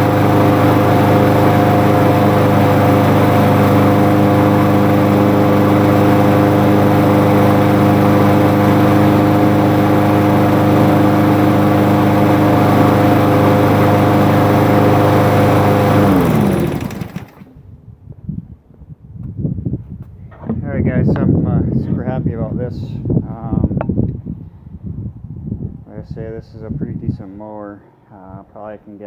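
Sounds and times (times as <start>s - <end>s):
lawn mower engine running: 0.0s - 17.6s.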